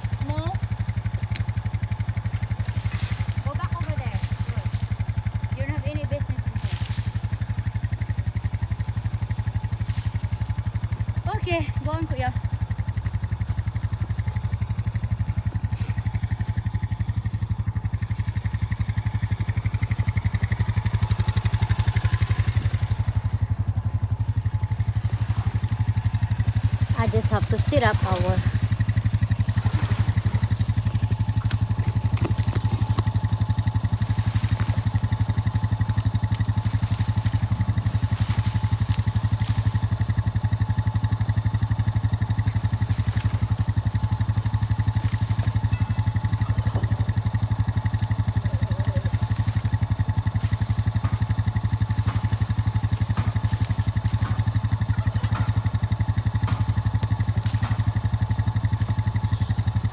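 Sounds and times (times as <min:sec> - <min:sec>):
vehicle engine humming: 0:00.0 - 0:59.9
faint clicks and clatter: 0:30.6 - 0:40.3.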